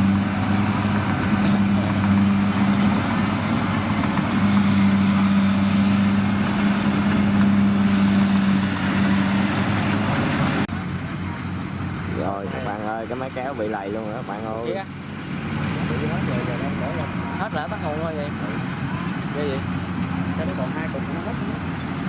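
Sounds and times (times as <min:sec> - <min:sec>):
tractor diesel engine high revs: 0:00.0 - 0:22.0.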